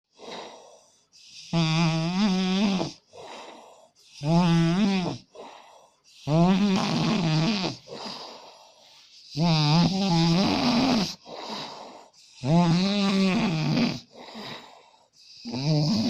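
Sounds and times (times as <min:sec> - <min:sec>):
soft breathing: 0:00.1 - 0:01.6, 0:02.9 - 0:04.2, 0:05.1 - 0:06.4, 0:07.8 - 0:09.4, 0:11.1 - 0:12.5, 0:14.0 - 0:16.0
man snoring heavily: 0:00.2 - 0:16.0.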